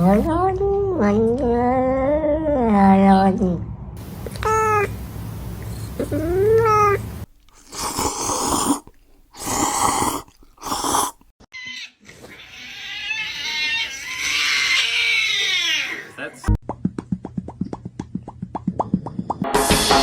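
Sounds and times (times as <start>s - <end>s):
harsh cat bursts: 4.0s - 11.2s
cat meowing: 4.2s - 5.0s, 6.0s - 7.3s, 11.6s - 16.1s
long drawn-out cat call: 4.2s - 5.0s, 5.9s - 7.3s.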